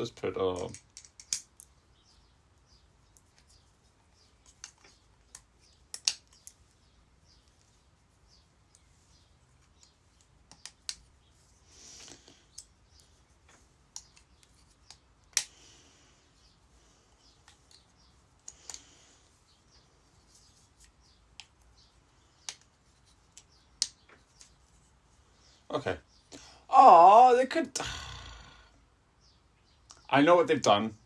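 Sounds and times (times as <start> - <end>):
soft rustle: 1.7 - 26.4.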